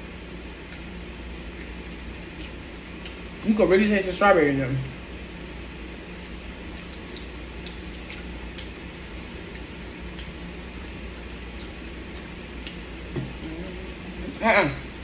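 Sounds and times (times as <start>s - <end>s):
steady low hum: 0.0s - 15.0s
chewing: 0.6s - 3.4s, 5.2s - 14.4s.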